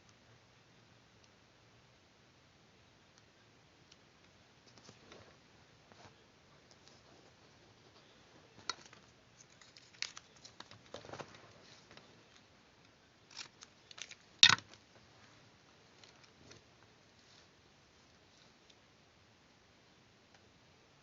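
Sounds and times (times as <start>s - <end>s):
paper snips taps and rustles: 8.5s - 12.5s.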